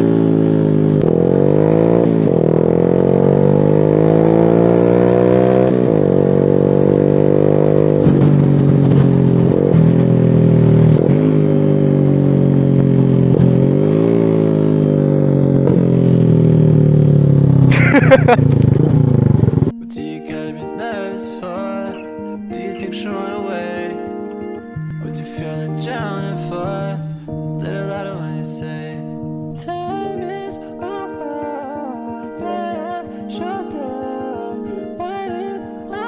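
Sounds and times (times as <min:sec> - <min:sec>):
motorcycle engine accelerating: 0:00.0 - 0:19.8.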